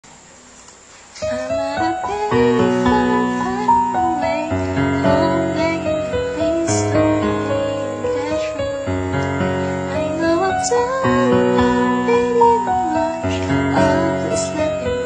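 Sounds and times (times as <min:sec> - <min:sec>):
piano playing sustained chords: 0:01.2 - 0:15.0.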